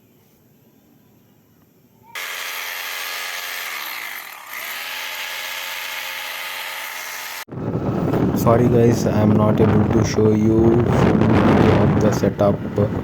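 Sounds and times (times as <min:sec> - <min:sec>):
electric drill boring into concrete: 0:02.2 - 0:07.5.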